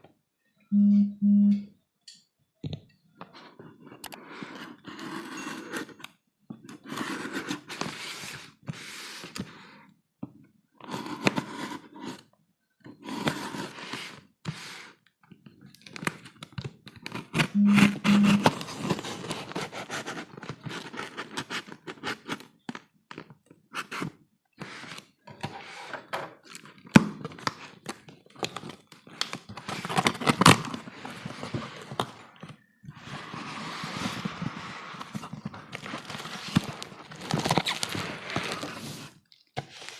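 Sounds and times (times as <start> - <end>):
packaging scraping and rustling: 17.0 - 22.6, 23.8 - 39.9.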